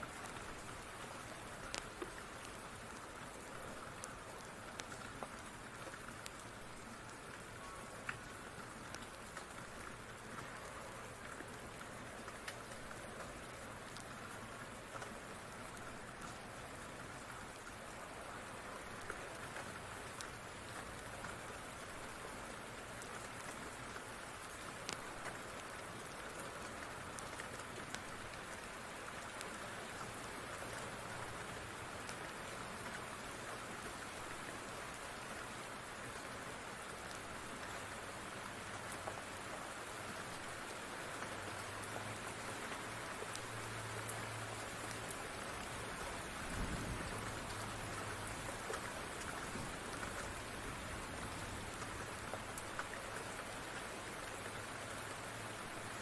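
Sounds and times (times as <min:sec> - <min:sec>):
steady rain: 0:00.0 - 0:56.0
crackling fire: 0:00.1 - 0:31.4, 0:36.8 - 0:39.4, 0:40.2 - 0:53.9.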